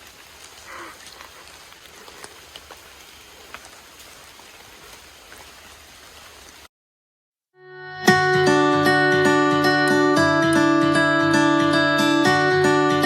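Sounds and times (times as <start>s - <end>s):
rain hissing: 0.0s - 6.7s, 8.1s - 13.0s
raindrops ticking: 0.0s - 6.7s.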